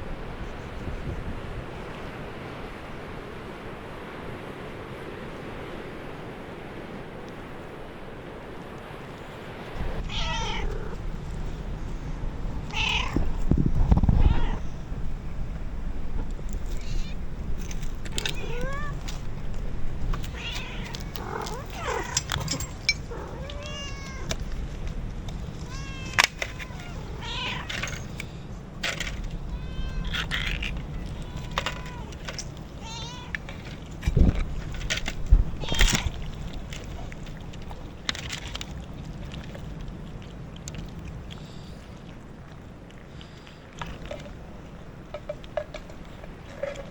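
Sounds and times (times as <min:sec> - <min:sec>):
wind rumble on microphone: 0:00.0 - 0:46.9
cat meowing: 0:10.1 - 0:11.0, 0:12.7 - 0:13.3, 0:14.0 - 0:14.8, 0:16.7 - 0:17.2, 0:18.1 - 0:19.1, 0:20.2 - 0:24.4, 0:25.6 - 0:27.9, 0:29.5 - 0:32.2, 0:32.8 - 0:33.4, 0:35.6 - 0:36.2.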